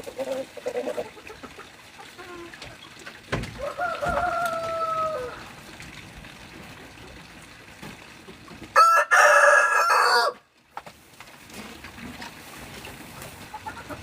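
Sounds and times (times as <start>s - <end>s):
rooster crowing: 3.6s - 5.5s, 8.8s - 10.4s.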